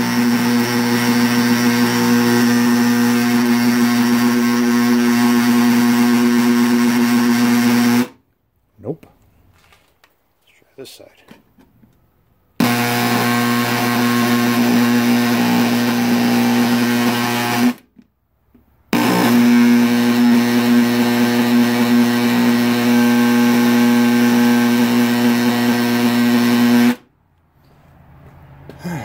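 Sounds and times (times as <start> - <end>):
power tool buzzing: 0.0 - 8.2, 12.6 - 18.0, 18.9 - 27.1.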